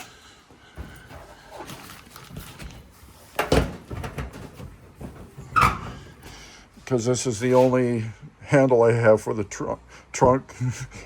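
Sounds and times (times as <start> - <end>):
knocks and clunks of handling: 0.7 - 6.6.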